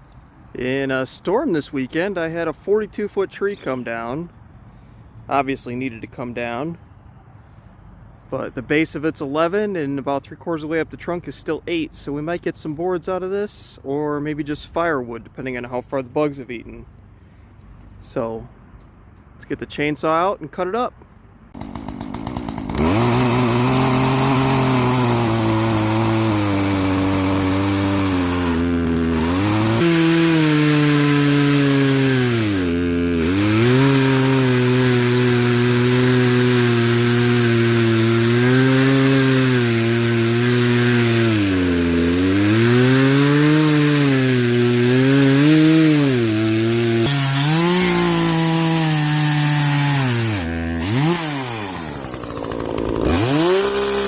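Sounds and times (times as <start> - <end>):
chainsaw cutting wood: 21.6 - 54.0.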